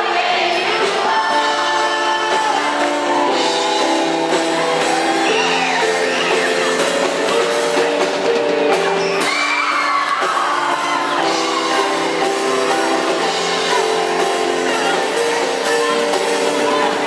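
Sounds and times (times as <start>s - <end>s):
live band playing: 0.0s - 17.0s
person singing: 0.0s - 17.0s
crowd whoops and shouts: 3.1s - 7.7s, 8.7s - 13.8s.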